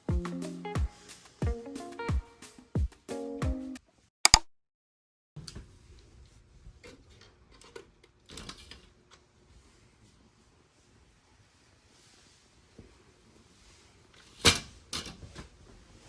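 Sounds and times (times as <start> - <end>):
pitched music: 0.0 - 3.8
sharp click: 4.3 - 4.5.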